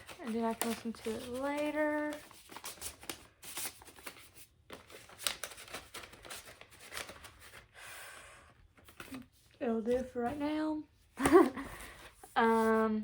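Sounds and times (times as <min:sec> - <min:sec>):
paper and cardboard rustling: 0:00.0 - 0:07.8, 0:08.6 - 0:13.0.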